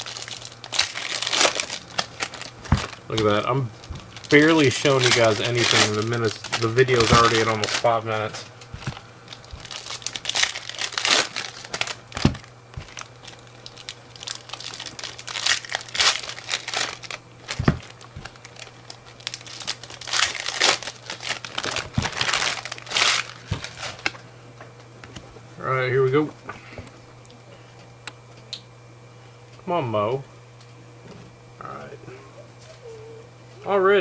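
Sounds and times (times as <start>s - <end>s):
plastic wrappers crinkling and tearing: 0.0s - 24.2s
cards tapped down: 1.3s - 13.2s, 15.5s - 18.5s.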